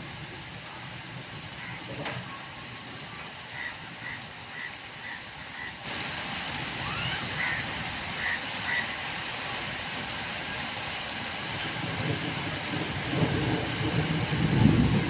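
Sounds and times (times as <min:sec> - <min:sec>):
heavy rain falling: 0:00.0 - 0:15.0
thunder rumble: 0:11.6 - 0:15.0.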